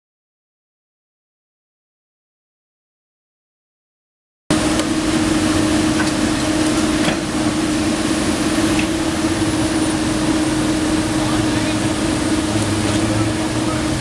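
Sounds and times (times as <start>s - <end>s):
excavator diesel engine running: 4.5s - 14.0s.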